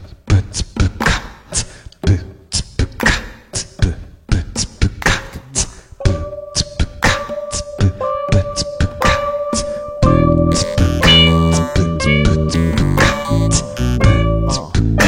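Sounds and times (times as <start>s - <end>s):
beatboxing percussive beat: 0.0s - 15.0s
held pitched tone: 5.6s - 15.0s.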